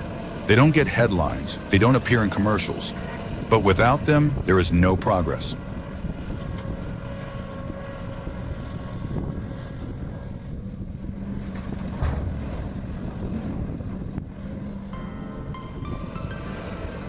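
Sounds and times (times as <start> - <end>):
excavator diesel engine running: 0.0 - 17.0
wind noise on microphone: 5.6 - 17.0.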